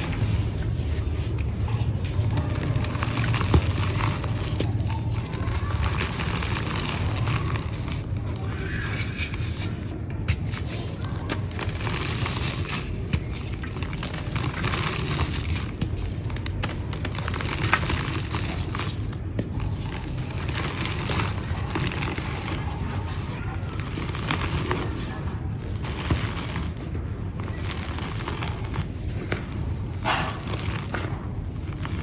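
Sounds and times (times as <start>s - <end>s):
dried mud crumbling: 0.0s - 32.0s.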